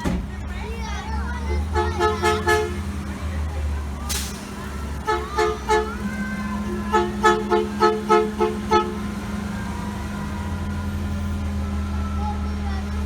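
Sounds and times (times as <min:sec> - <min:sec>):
low engine hum: 0:00.0 - 0:13.0
vehicle horn two-note beeps: 0:01.7 - 0:02.9, 0:05.0 - 0:06.0, 0:06.8 - 0:09.1.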